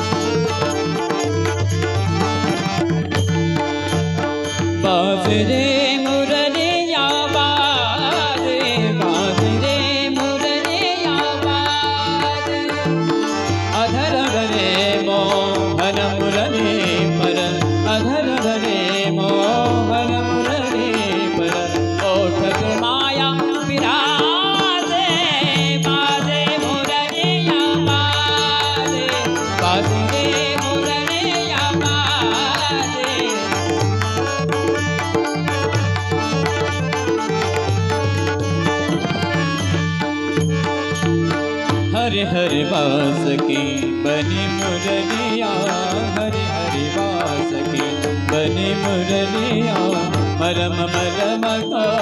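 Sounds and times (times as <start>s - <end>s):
tabla drumming: 0.0s - 52.0s.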